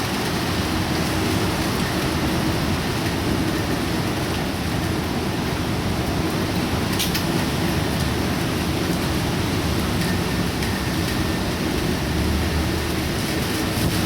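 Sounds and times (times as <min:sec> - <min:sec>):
heavy rain: 0:00.0 - 0:14.0
wind: 0:00.0 - 0:14.0.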